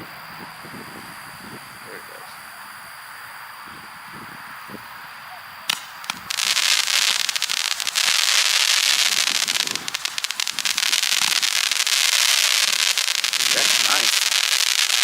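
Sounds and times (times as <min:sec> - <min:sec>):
firework crackling: 0:00.0 - 0:15.0
firework pops: 0:05.7 - 0:15.0.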